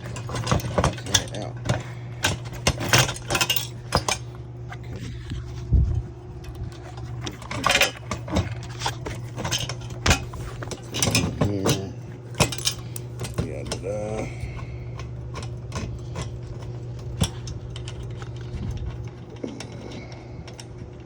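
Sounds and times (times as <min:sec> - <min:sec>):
bike parts clinking and rattling: 0:00.0 - 0:05.6, 0:06.4 - 0:21.0.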